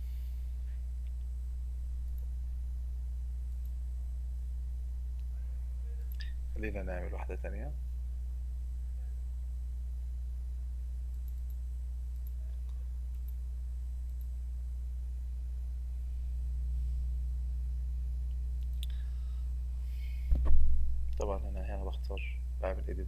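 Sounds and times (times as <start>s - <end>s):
low electrical hum: 0.0s - 23.0s
faint mouse clicks: 0.7s - 1.3s, 6.0s - 6.4s, 11.1s - 13.4s, 14.0s - 14.4s, 18.2s - 19.1s.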